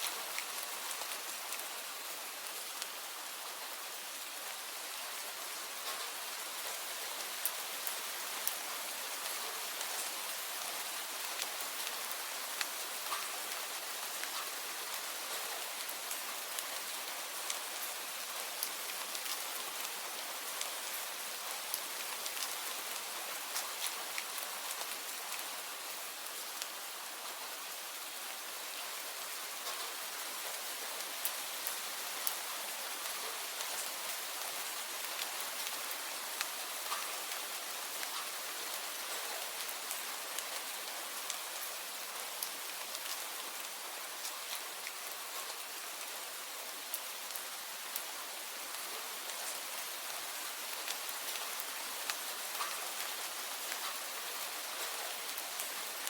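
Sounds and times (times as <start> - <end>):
steady rainfall: 0.0 - 56.0
raindrop ticks: 12.6 - 13.4, 14.2 - 14.6, 29.6 - 30.0, 35.1 - 41.5, 50.8 - 55.8.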